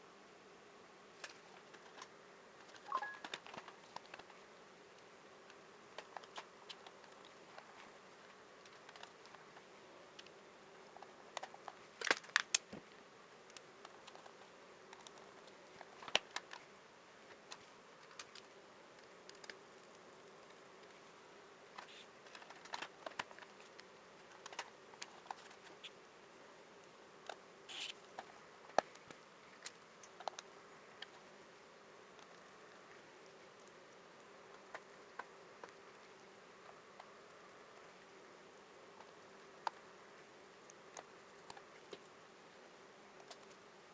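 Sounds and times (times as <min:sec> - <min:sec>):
faint steady hum: 0:00.0 - 0:43.9
small clicks and taps: 0:05.0 - 0:07.9, 0:17.3 - 0:21.0, 0:21.8 - 0:25.8, 0:28.0 - 0:31.2, 0:43.2 - 0:43.6.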